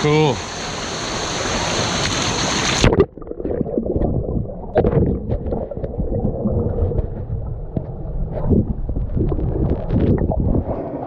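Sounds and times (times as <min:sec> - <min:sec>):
waterfall rushing: 0:00.0 - 0:02.9
underwater gurgling and bubbling: 0:02.2 - 0:11.0
muffled underwater rumble: 0:02.8 - 0:11.0.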